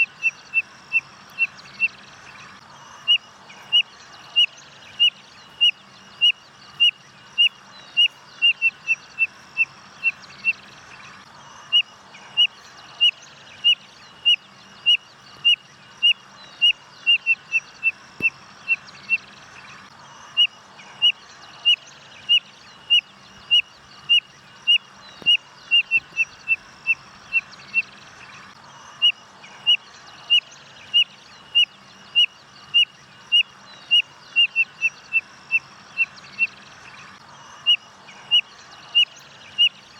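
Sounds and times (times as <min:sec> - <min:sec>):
bird whistling song: 0:20.4 - 0:28.0.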